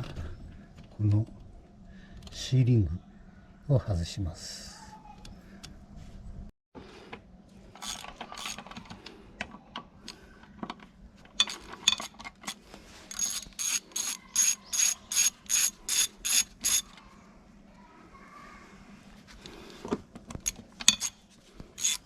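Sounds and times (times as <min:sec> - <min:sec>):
ratchet wrench strokes: 0:07.8 - 0:08.6, 0:11.4 - 0:17.0, 0:20.4 - 0:22.0
metal tools clicking and tapping: 0:10.7 - 0:17.0, 0:20.3 - 0:21.2, 0:21.8 - 0:22.0.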